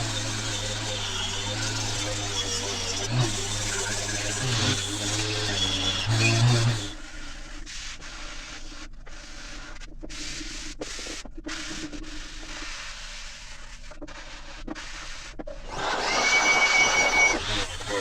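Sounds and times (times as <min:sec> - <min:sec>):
sandpaper rubbing on wood: 0:00.0 - 0:07.0.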